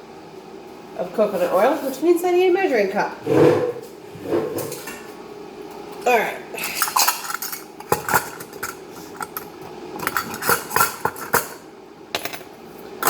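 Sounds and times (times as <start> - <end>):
dishes and utensils clattering: 3.3 - 5.1, 6.6 - 11.6.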